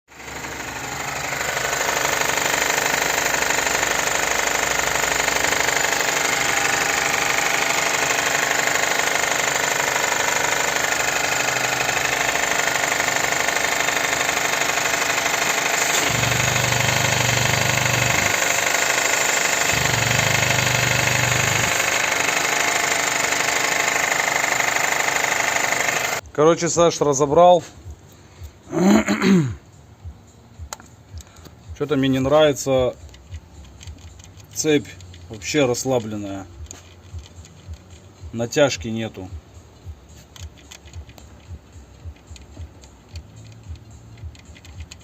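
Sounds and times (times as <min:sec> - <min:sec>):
car engine knocking rattle: 0:00.1 - 0:26.2.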